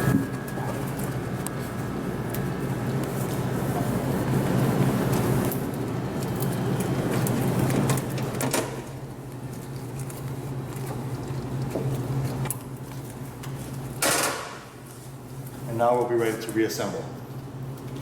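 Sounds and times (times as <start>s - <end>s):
steady low hum: 0.0s - 14.0s
damp cloth wiping surfaces: 1.6s - 5.5s.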